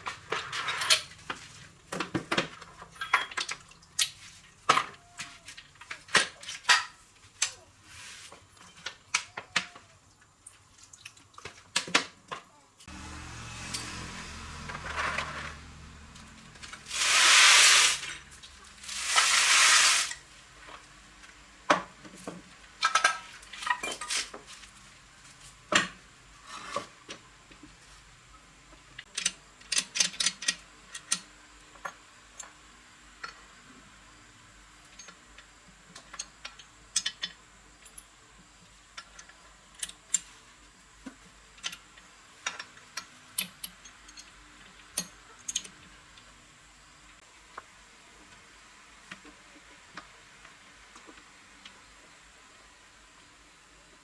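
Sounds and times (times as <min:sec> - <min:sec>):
metal parts and tools clinking: 0:00.1 - 0:04.2
hissing spray: 0:12.9 - 0:20.2.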